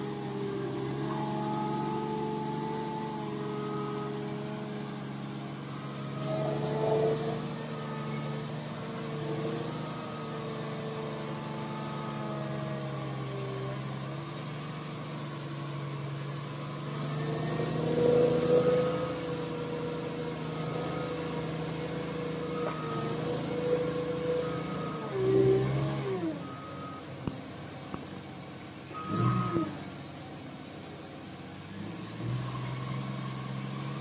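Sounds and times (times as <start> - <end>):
heavy machine engine running: 0.0 - 34.0
faint beeps: 0.4 - 12.8, 18.0 - 30.1.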